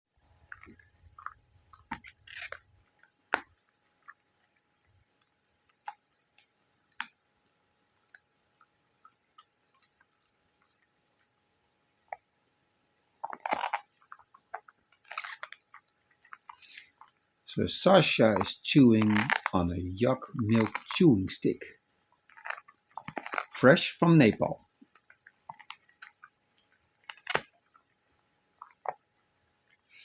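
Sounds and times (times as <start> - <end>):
dog chewing hard chew crunching: 0.4 - 7.4, 13.2 - 17.2, 20.4 - 21.1, 22.2 - 23.6, 24.9 - 27.9.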